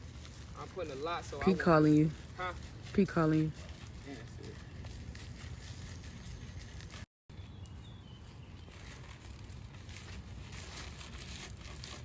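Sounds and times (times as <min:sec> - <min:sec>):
faint rustles and clicks: 0:00.0 - 0:07.1.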